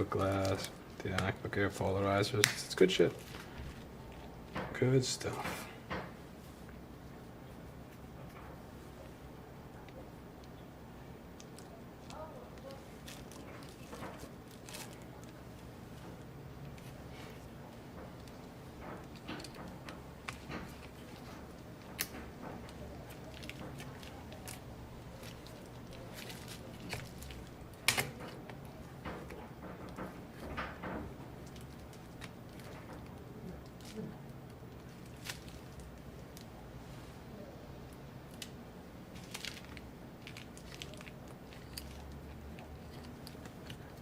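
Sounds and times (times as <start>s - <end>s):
low steady hum: 0.0s - 44.0s
small clicks and crackles: 11.3s - 36.5s, 37.9s - 44.0s.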